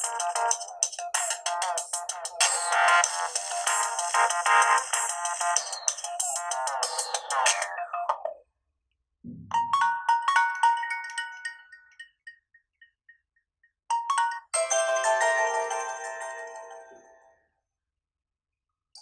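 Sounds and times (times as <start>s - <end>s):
bell-like ringtone melody: 0.0s - 8.3s, 9.5s - 12.5s, 13.9s - 17.4s
electronic ringtone tune: 0.0s - 8.4s, 9.5s - 12.2s, 13.9s - 17.3s
low thump: 9.3s - 9.6s
chiming ringtone: 9.6s - 12.4s, 13.9s - 17.4s.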